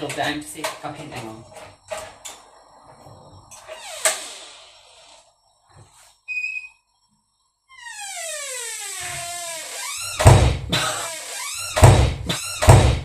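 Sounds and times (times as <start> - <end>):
door closer squeal: 3.6 - 5.2, 6.3 - 6.9, 7.7 - 13.0.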